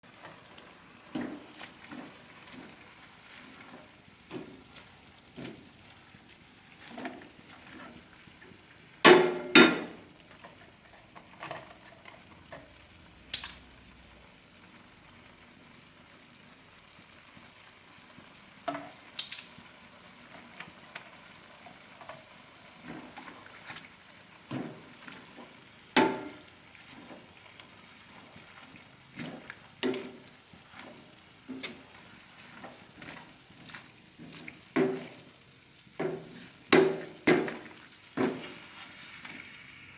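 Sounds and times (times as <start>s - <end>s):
faint steady sizzle: 0.0s - 39.9s
spatula scraping and knocking pan: 1.1s - 2.8s, 24.4s - 27.3s, 28.2s - 35.4s, 36.0s - 39.5s.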